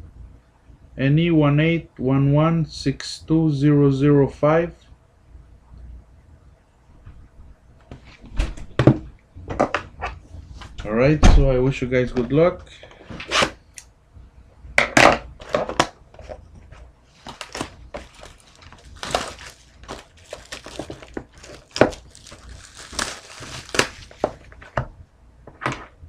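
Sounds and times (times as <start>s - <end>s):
plastic wrap crinkling and tearing: 17.1s - 24.7s.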